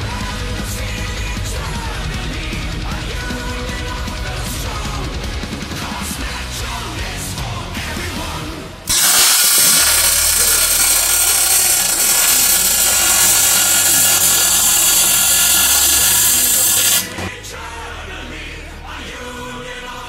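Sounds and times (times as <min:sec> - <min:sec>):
welding arc hissing: 0:08.9 - 0:17.2.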